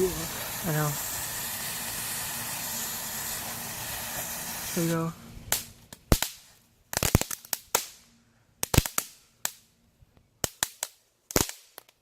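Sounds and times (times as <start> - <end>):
sharp pops and cracks of powder: 0.0 - 9.7, 10.4 - 12.0.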